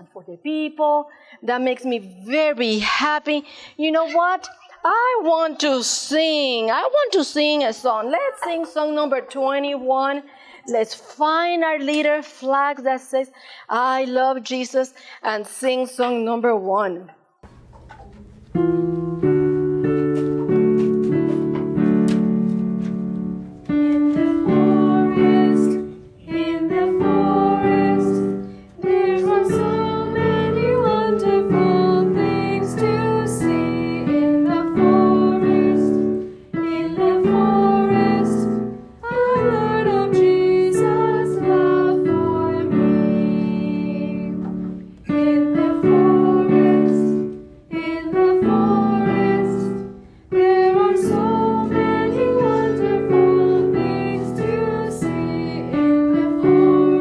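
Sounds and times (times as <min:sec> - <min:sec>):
children's song on piano: 0:17.8 - 0:57.0.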